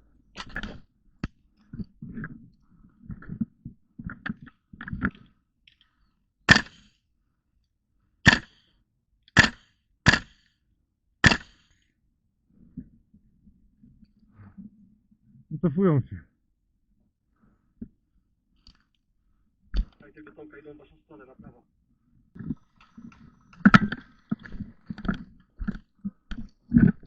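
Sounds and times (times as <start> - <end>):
airsoft gun shots: 6.5 - 6.8, 8.3 - 8.6, 9.4 - 10.4, 11.2 - 11.6.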